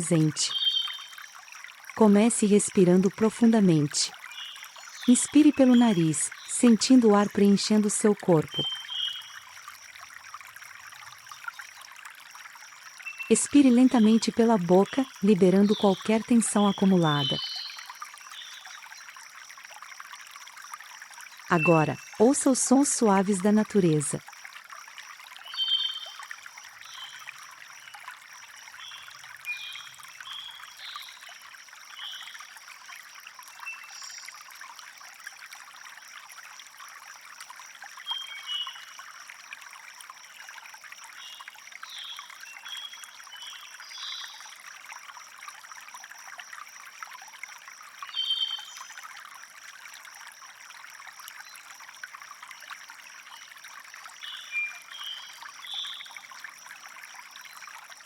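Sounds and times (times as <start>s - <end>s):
stream flowing: 0.0s - 58.0s
birds chirping: 13.1s - 17.8s, 21.5s - 23.9s.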